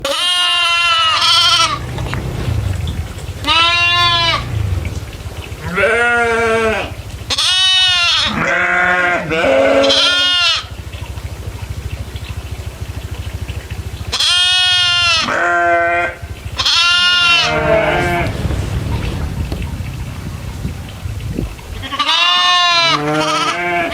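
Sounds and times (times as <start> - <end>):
goats bleating: 0.0 - 1.9, 3.4 - 4.6, 5.6 - 10.7, 14.1 - 20.1, 21.8 - 23.9
low steady rumble: 0.6 - 23.8.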